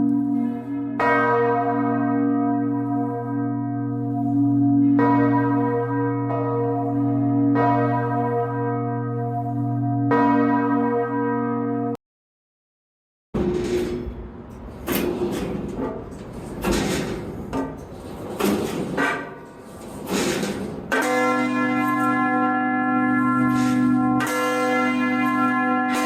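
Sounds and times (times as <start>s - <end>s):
large church bell tolling: 0.0s - 12.0s, 20.8s - 26.0s.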